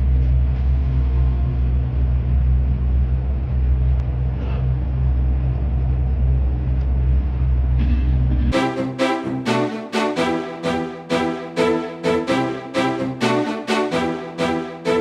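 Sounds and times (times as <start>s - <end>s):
orchestral music with brass: 8.5s - 15.0s.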